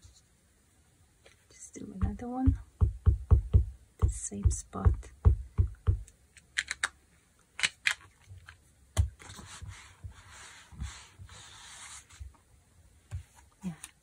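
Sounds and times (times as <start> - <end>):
stamp rubbing on fabric: 9.3 - 12.2.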